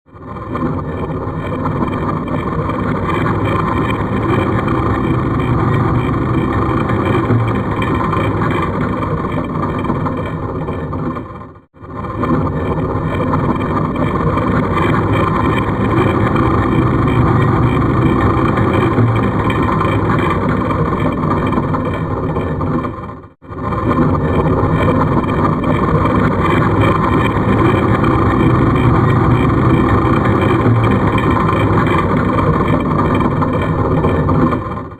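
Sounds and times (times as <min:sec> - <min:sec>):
heavy stone scraping and grinding: 0:00.1 - 0:34.9.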